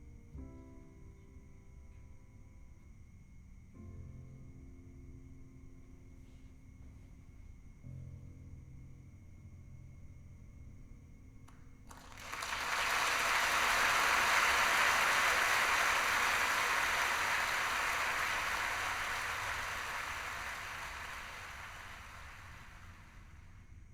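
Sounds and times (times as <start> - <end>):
audience applause: 11.9 - 23.6.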